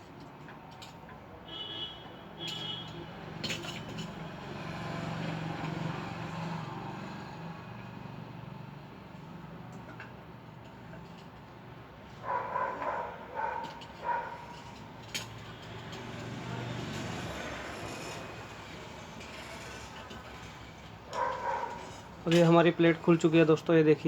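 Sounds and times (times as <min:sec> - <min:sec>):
handling and rubbing noise: 0:10.7 - 0:24.0.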